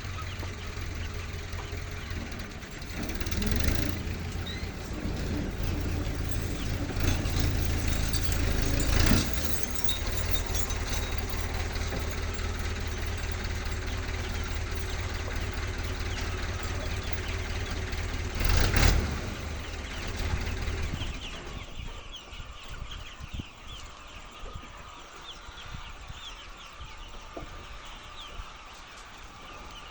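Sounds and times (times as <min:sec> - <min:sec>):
motor humming: 0:00.0 - 0:21.3.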